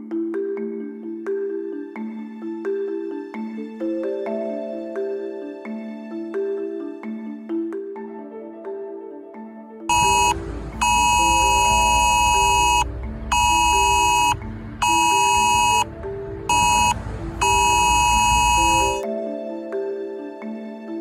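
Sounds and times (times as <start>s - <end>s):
soft mallet background music: 0.0s - 21.0s
phone vibration buzzing: 9.9s - 15.8s, 16.5s - 19.0s
harsh pulsing phone alarm tone: 9.9s - 15.9s, 16.5s - 19.0s.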